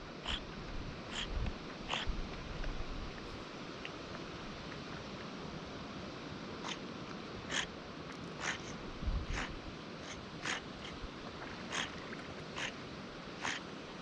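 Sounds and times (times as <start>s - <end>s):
otters snorting: 0.2s - 0.5s, 1.1s - 2.2s, 6.6s - 6.8s, 7.5s - 12.8s, 13.4s - 13.7s.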